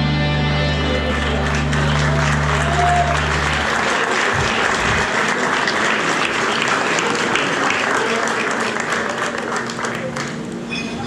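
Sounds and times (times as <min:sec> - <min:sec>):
band holding low note: 0:00.0 - 0:05.3
audience applauding: 0:00.7 - 0:10.7.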